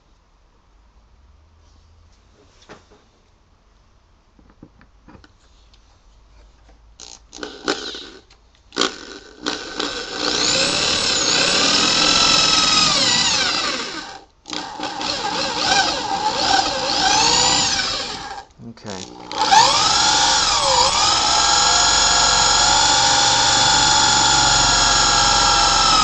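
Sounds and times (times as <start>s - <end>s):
power drill driving screw: 7.0s - 26.0s.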